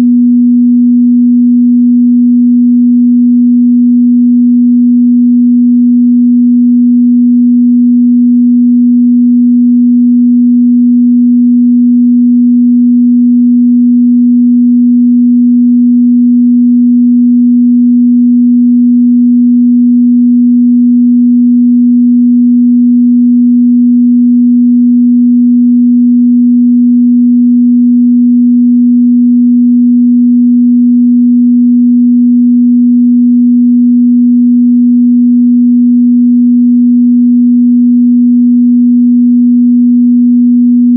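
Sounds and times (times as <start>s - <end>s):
sine wave test tone: 0.0s - 40.9s.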